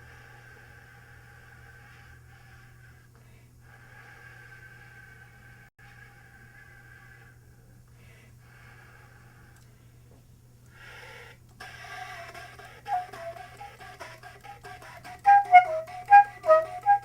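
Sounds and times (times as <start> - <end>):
room hum: 0.0 - 17.0
breathy flute playing: 12.8 - 13.6, 15.0 - 17.0.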